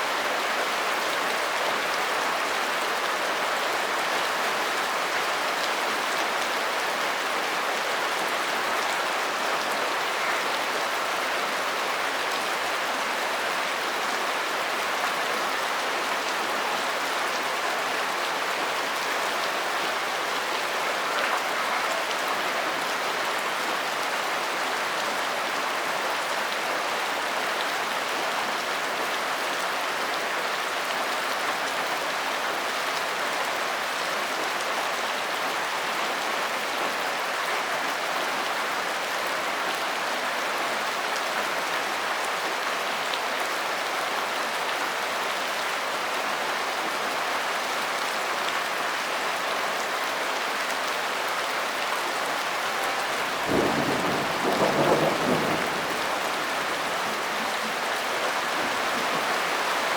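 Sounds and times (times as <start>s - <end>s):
steady rain hiss: 46.6s - 59.9s.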